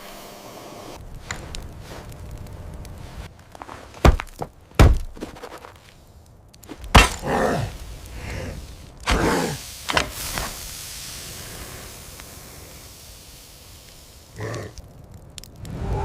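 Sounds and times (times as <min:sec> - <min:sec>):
rough rustling noise: 0:01.0 - 0:15.6
heavy thuds: 0:03.6 - 0:05.8, 0:06.7 - 0:07.8.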